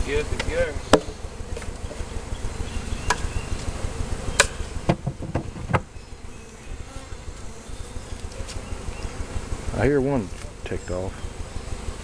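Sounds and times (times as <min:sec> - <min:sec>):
honeybees buzzing: 0:00.0 - 0:12.0
sharp knocks: 0:04.4 - 0:05.9.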